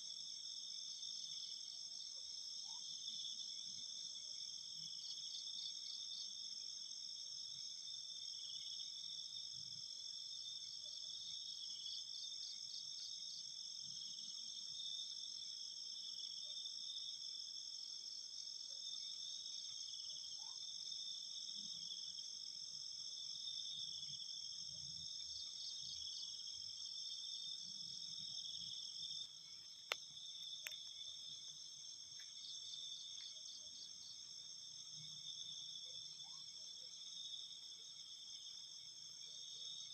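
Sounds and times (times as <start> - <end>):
crickets and insects chirring: 2.6 - 39.9.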